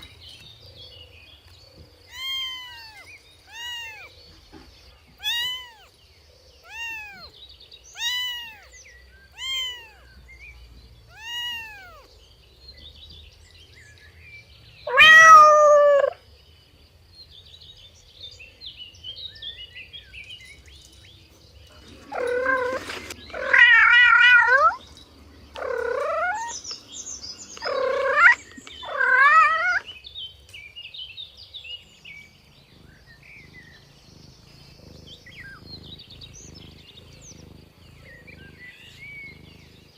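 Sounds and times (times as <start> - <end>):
faint high chirping: 0.0 - 39.9
cats meowing: 2.1 - 4.2, 5.1 - 5.9, 6.6 - 7.3, 7.9 - 10.2, 11.1 - 12.1, 14.9 - 16.2, 21.9 - 24.8, 25.5 - 26.8, 27.6 - 30.0, 34.5 - 39.9.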